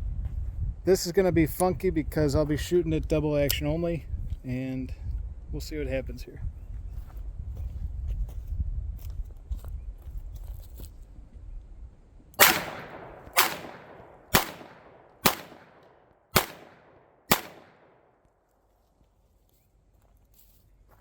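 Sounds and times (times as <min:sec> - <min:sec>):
revolver shots ringing: 0:12.4 - 0:15.8, 0:16.4 - 0:17.8.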